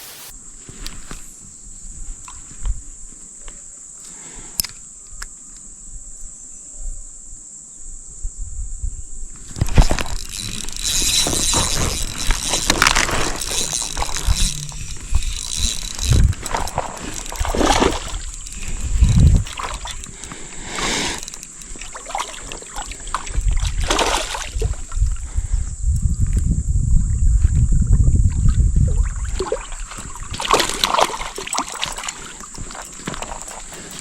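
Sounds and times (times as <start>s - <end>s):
water splashing and sloshing: 9.4s - 25.2s, 28.4s - 34.0s.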